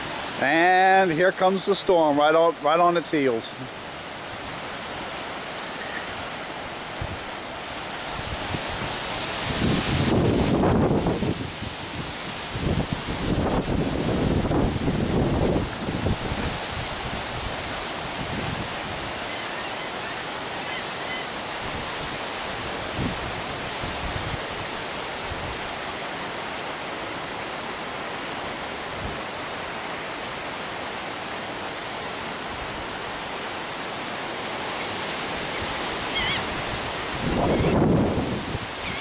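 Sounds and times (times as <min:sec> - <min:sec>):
choppy water: 0:00.0 - 0:39.0
wind rushing: 0:08.0 - 0:19.1, 0:36.5 - 0:38.8
wind buffeting microphone: 0:08.0 - 0:19.2, 0:21.6 - 0:25.7, 0:36.3 - 0:38.9.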